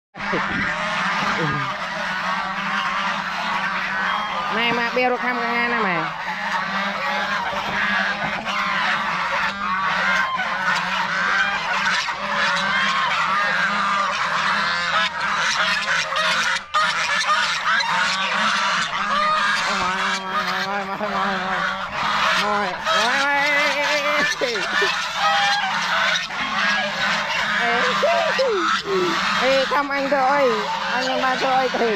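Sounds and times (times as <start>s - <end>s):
geese honking: 0.2s - 31.9s.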